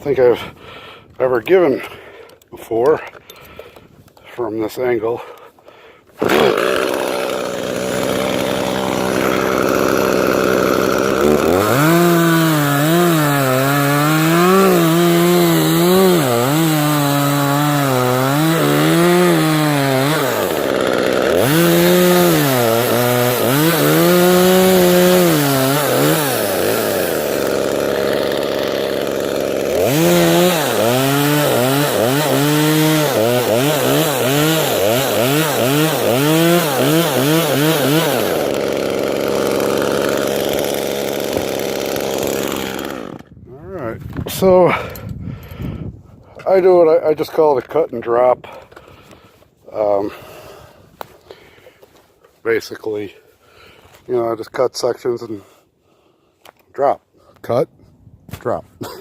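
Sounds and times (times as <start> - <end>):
chainsaw cutting wood: 6.1 - 43.4.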